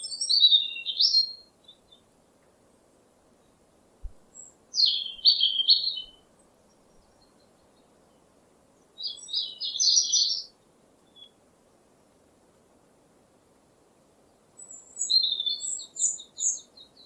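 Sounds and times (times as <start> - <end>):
songbird warbling: 0.0 - 1.4, 4.3 - 6.2, 9.0 - 10.5, 14.6 - 17.0
faint steady hiss: 0.0 - 17.0.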